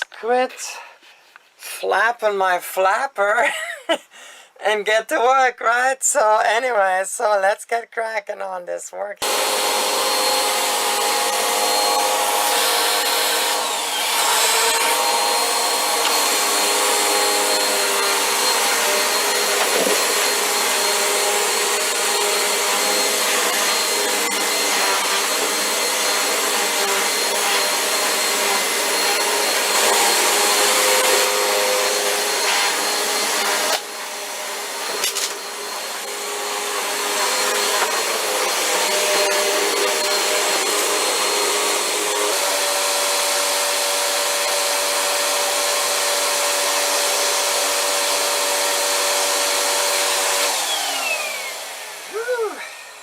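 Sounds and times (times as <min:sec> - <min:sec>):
vacuum cleaner running: 0:09.2 - 0:53.0
vacuum cleaner click: 0:13.5 - 0:31.3, 0:31.9 - 0:34.0, 0:34.8 - 0:36.0, 0:37.2 - 0:40.9.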